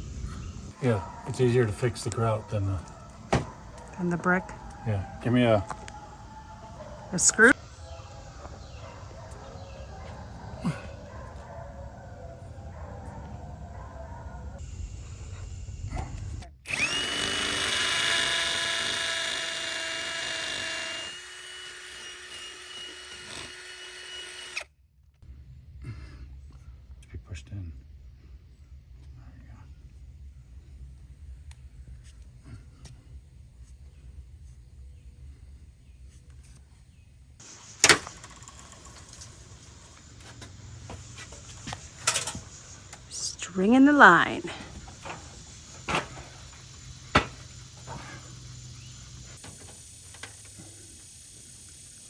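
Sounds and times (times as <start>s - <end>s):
power drill whining: 16.3s - 24.7s.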